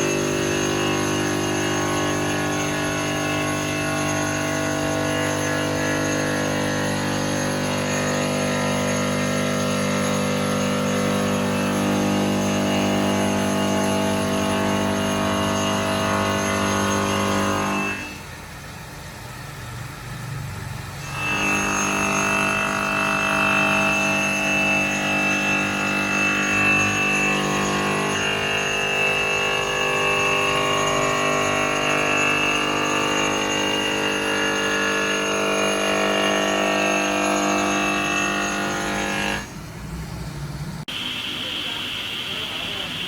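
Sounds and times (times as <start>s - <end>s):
electric stone saw whining: 0.0s - 18.4s, 20.9s - 39.5s.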